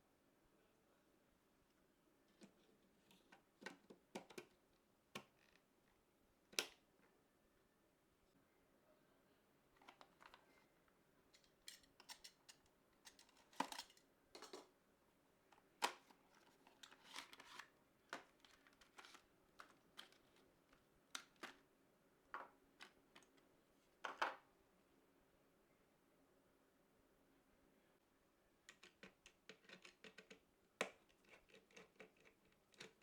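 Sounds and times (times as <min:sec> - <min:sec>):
hardware clicks taps and scrapes: 0:11.3 - 0:14.7, 0:28.7 - 0:33.0.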